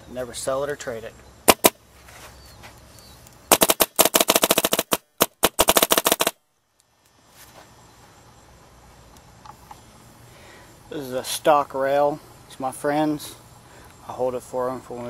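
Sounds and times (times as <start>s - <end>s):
paintball marker rapid firing: 1.5s - 1.8s, 3.5s - 6.4s.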